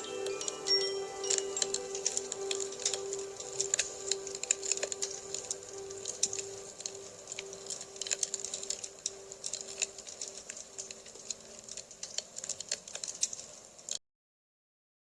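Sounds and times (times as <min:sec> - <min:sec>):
singing bowl hum: 0:00.0 - 0:11.0
campfire crackling and popping: 0:00.0 - 0:14.0.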